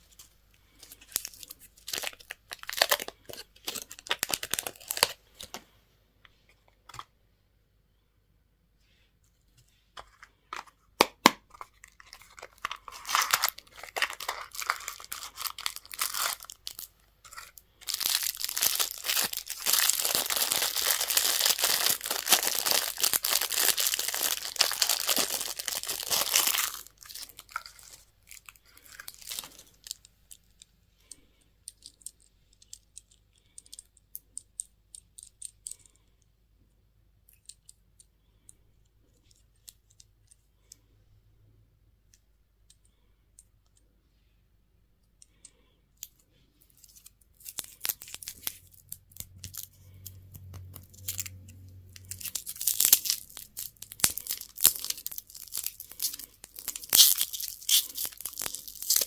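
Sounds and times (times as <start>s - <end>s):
packaging tearing and crinkling: 0.7s - 5.6s, 11.5s - 30.0s, 46.8s - 49.7s, 52.0s - 59.0s.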